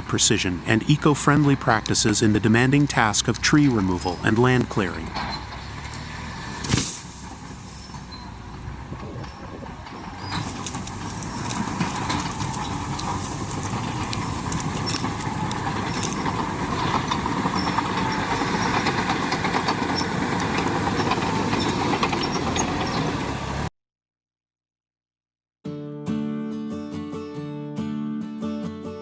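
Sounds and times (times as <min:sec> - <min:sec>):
bulldozer engine and tracks: 0:00.0 - 0:23.7
wood cracking: 0:10.1 - 0:22.2.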